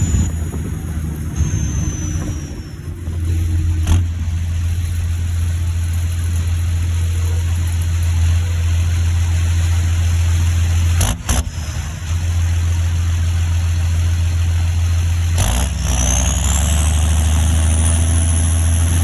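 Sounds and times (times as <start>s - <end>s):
turbo whistle: 0.0s - 4.1s
tractor diesel engine running: 0.0s - 19.0s.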